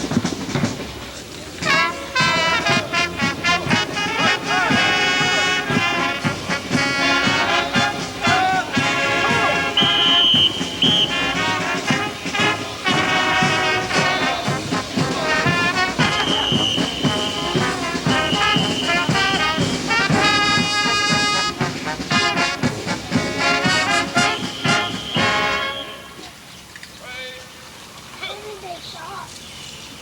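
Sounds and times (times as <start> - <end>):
brass band playing: 1.6 - 26.5.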